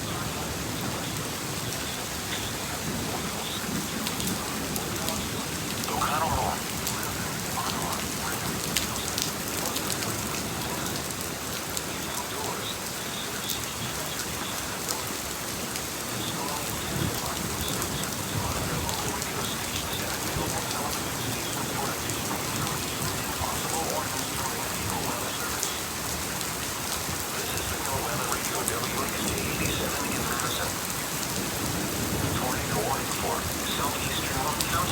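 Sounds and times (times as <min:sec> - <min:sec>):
heavy rain falling: 0:00.0 - 0:34.9
raindrops ticking close by: 0:00.0 - 0:34.9.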